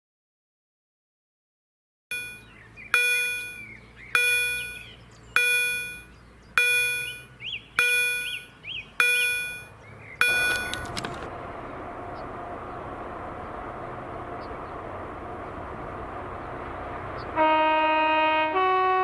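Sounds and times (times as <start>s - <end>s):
bell ringing: 2.1s - 11.1s
small birds chirping: 2.1s - 17.4s
outdoor rushing noise: 9.4s - 17.4s.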